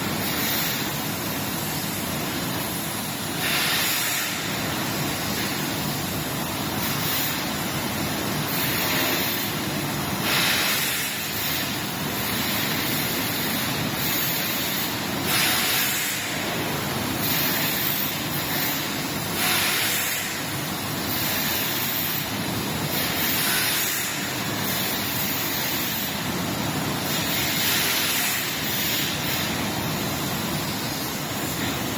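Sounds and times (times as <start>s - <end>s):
dehumidifier fan running: 0.0s - 3.4s, 24.0s - 27.6s, 28.4s - 31.9s.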